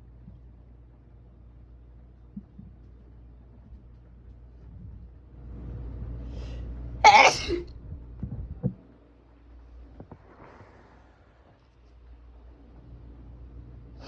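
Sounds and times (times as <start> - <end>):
breath building before sneeze: 7.1 - 7.6
person sneezing: 7.1 - 7.6.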